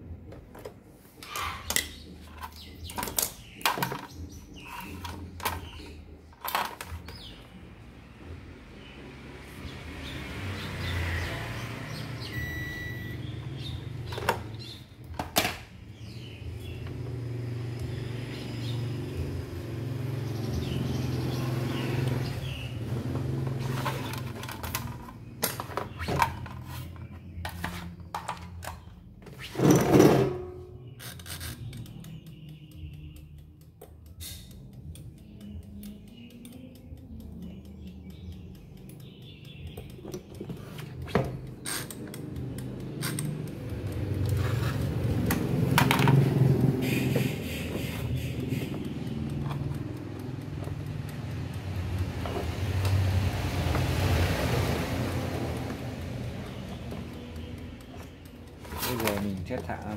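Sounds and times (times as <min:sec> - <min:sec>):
clicks and knocks of parts: 0:00.2 - 0:07.4, 0:14.1 - 0:15.8, 0:23.1 - 0:37.6, 0:38.8 - 0:53.0, 0:56.4 - 0:59.9
short beep: 0:12.3 - 0:13.2.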